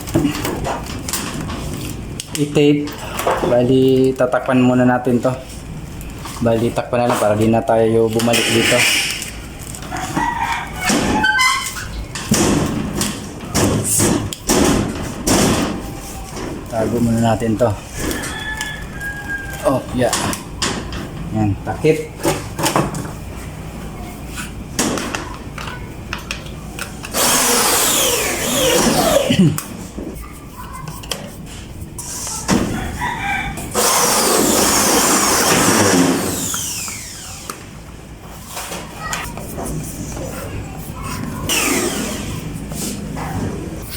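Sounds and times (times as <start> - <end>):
power drill motor whine: 27.1 - 29.3, 33.7 - 37.6, 41.5 - 42.2.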